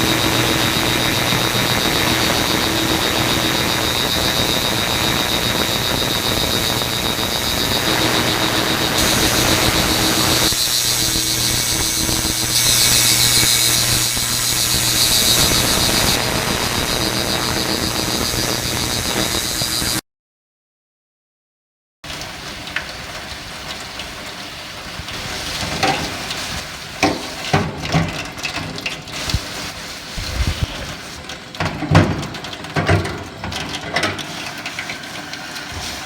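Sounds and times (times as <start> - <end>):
ultrasonic cleaner buzzing: 0.0 - 20.0, 30.2 - 30.9.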